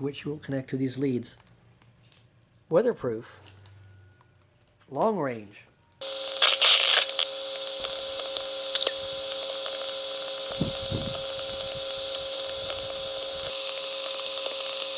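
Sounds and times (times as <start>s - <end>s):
radio static crackle: 6.0s - 14.9s
steady hum tone: 6.0s - 14.9s.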